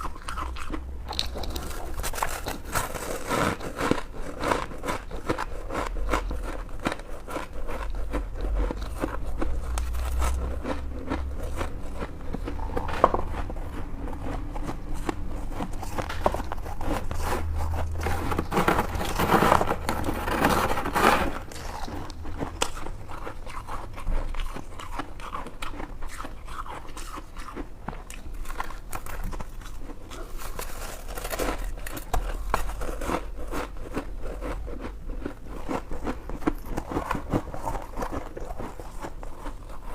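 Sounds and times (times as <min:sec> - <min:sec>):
ice being chewed: 0:00.0 - 0:39.9.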